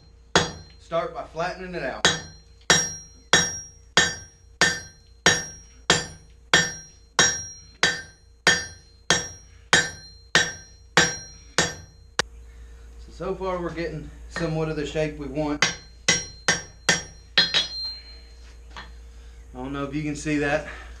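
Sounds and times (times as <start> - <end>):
hammer striking steel on anvil: 0.0 - 0.8, 2.0 - 12.2, 14.4 - 14.7, 15.6 - 19.0
faint steady hum: 0.0 - 21.0.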